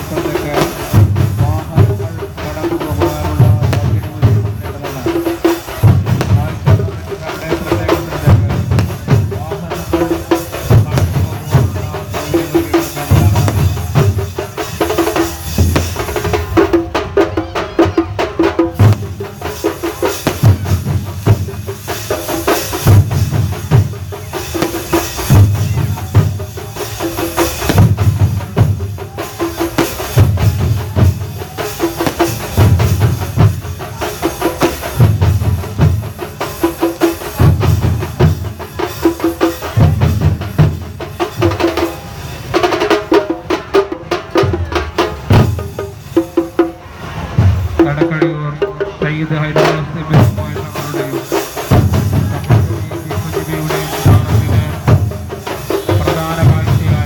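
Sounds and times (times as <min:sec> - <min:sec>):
bass drum beats: 0:00.0 - 0:05.2, 0:05.8 - 0:17.2, 0:17.8 - 0:36.1, 0:49.4 - 0:57.0
percussion band drumming: 0:00.0 - 0:57.0.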